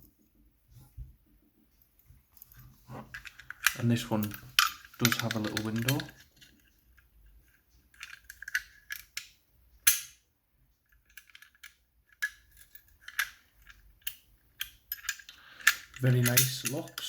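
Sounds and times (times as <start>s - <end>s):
metal locks clicking and knocking: 3.1s - 6.2s, 11.0s - 17.0s.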